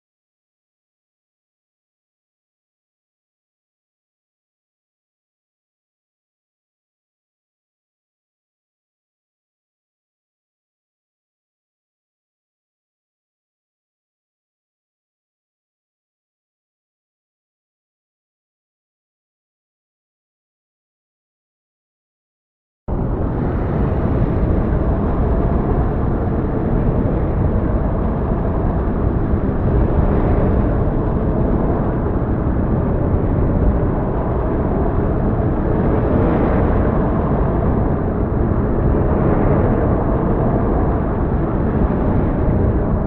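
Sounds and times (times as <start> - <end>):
low rumbling noise: 22.9 - 43.0.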